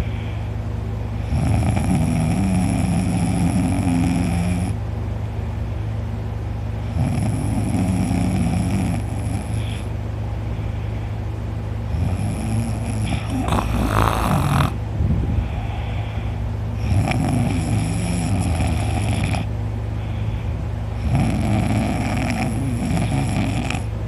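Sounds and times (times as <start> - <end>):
quiet breathing: 0.0 - 1.6, 9.0 - 12.3, 13.0 - 24.0
man snoring loudly: 1.2 - 4.8, 6.9 - 9.9, 11.9 - 14.8, 16.8 - 19.5, 21.0 - 23.9.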